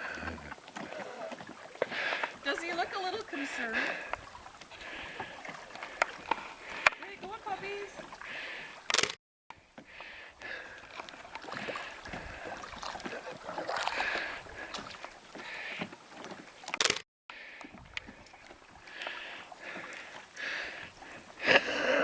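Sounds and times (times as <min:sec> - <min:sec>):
paddle strokes in water: 0:00.0 - 0:08.9, 0:09.6 - 0:22.0
sharp click: 0:08.9 - 0:09.2, 0:16.7 - 0:17.0.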